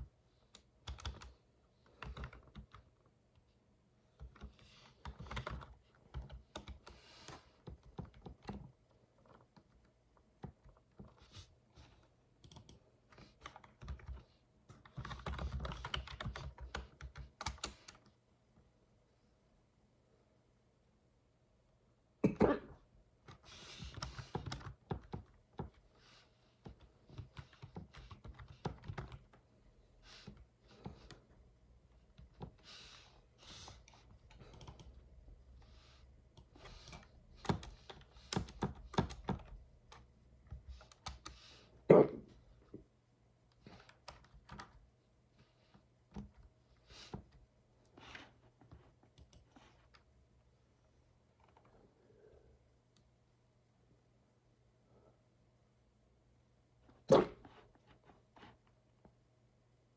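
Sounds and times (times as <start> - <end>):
typing on computer keyboard: 0.5 - 3.0, 4.2 - 11.5, 12.4 - 18.1, 23.3 - 25.8, 26.6 - 29.4, 33.4 - 35.0, 36.4 - 41.5, 43.7 - 44.8, 48.7 - 50.0
person hiccuping: 22.2 - 22.8, 41.9 - 42.3.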